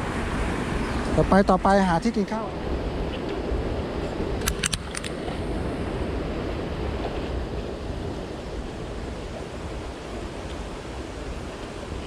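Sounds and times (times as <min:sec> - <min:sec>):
stream rushing: 0:00.0 - 0:12.0
sharp clicks: 0:04.4 - 0:05.2.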